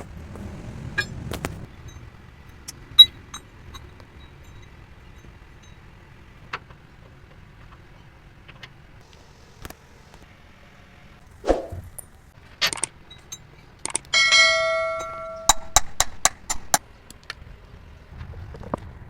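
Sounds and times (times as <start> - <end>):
metallic clanks and taps: 12.6 - 16.8.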